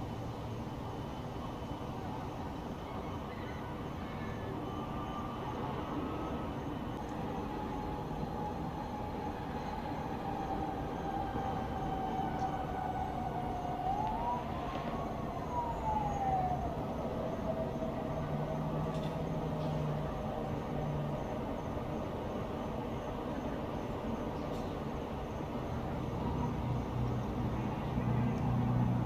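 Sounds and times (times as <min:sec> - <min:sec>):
town hum: 0:00.0 - 0:29.0
siren wailing: 0:07.5 - 0:18.9.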